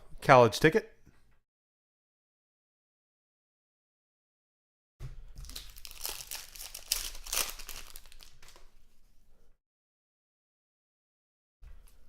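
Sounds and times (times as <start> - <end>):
foil wrapper crinkling and tearing: 5.4 - 8.6.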